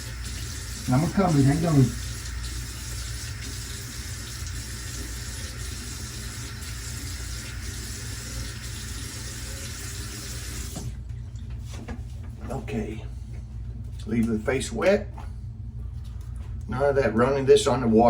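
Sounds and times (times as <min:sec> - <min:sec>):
water running from tap: 0:00.0 - 0:11.0.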